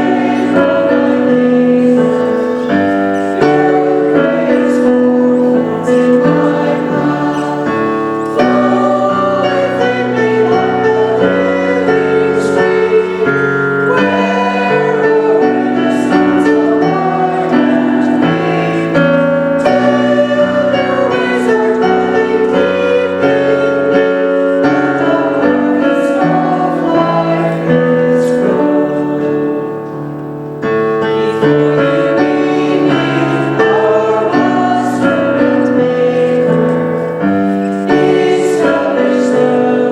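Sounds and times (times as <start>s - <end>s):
choir singing a hymn: 0.0s - 39.9s
piano accompaniment: 0.0s - 39.9s.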